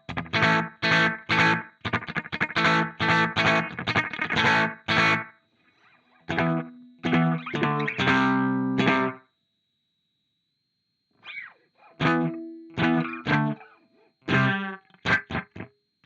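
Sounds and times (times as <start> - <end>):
electric guitar chord stabs: 0.0 - 5.2, 6.3 - 9.2, 12.0 - 13.7, 14.3 - 15.7.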